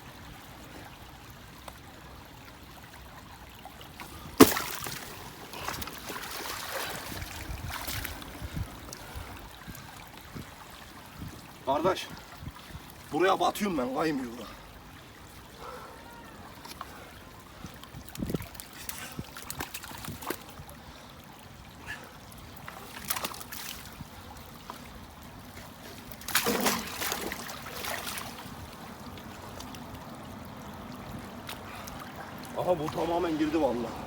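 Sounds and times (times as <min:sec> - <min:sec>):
feet squelching in mud: 0:04.0 - 0:08.3, 0:22.7 - 0:24.0, 0:25.5 - 0:28.6
wet clicks and splats: 0:18.1 - 0:20.5, 0:22.7 - 0:23.7.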